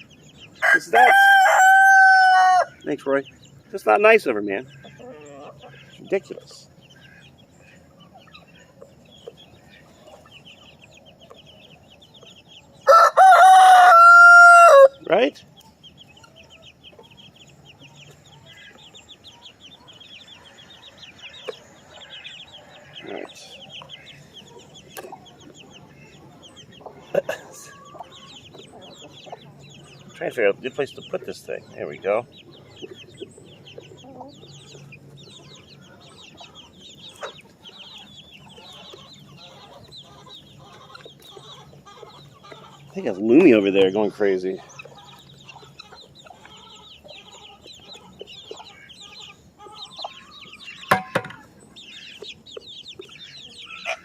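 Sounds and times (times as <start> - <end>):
chicks peeping: 0.0 - 54.0
hens clucking: 0.0 - 54.0
sharp knock: 50.9 - 51.5.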